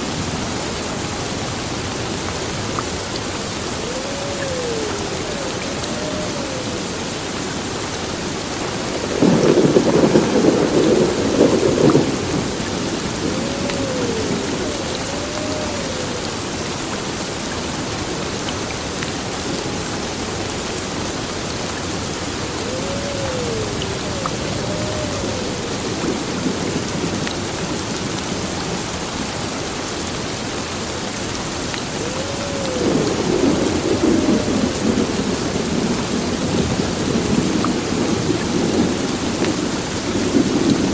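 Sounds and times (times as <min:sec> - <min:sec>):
heavy rain pouring: 0:00.0 - 0:40.9
thunder rolling: 0:03.8 - 0:16.6, 0:22.3 - 0:27.7.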